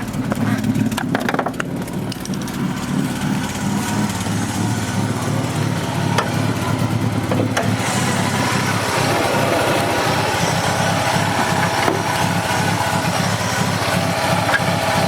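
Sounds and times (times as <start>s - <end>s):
car engine idling erratically: 0.0s - 15.0s.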